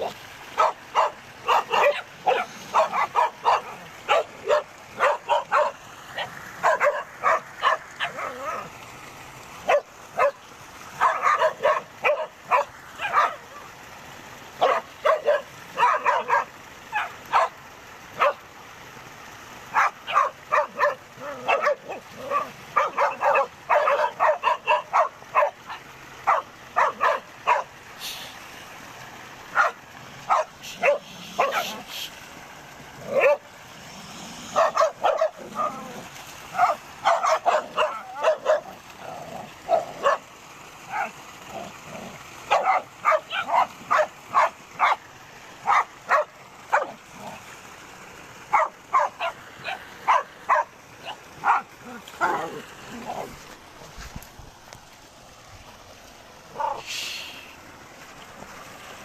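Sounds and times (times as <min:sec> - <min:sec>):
dog barking: 0:00.0 - 0:08.7, 0:09.6 - 0:10.4, 0:11.0 - 0:13.7, 0:14.6 - 0:17.6, 0:18.2 - 0:18.4, 0:19.7 - 0:27.7, 0:29.5 - 0:31.8, 0:33.0 - 0:33.5, 0:34.5 - 0:35.8, 0:36.5 - 0:38.8, 0:39.7 - 0:40.2, 0:40.9 - 0:41.2, 0:42.5 - 0:45.0, 0:45.6 - 0:47.0, 0:48.5 - 0:53.3, 0:56.5 - 0:56.9.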